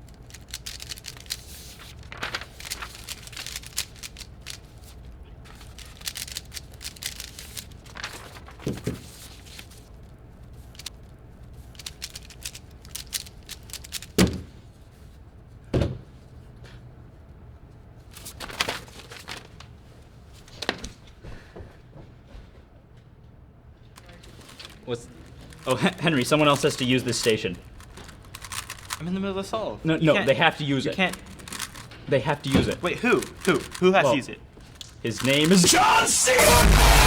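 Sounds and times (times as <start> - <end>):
puzzle cube plastic clicks: 0.0 - 9.9, 10.6 - 11.0, 11.6 - 14.3, 24.0 - 29.1, 30.0 - 36.0.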